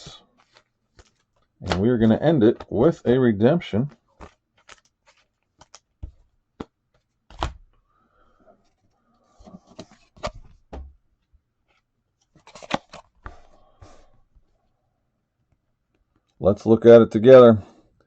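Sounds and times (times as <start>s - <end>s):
soft rustling of cards: 0.0s - 14.8s
cards tapping and clicking: 0.4s - 2.7s, 3.9s - 7.8s.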